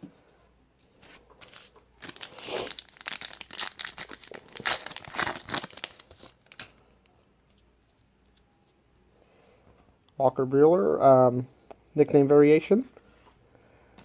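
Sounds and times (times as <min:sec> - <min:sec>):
plastic wrapper tearing and crinkling: 0:01.4 - 0:06.8.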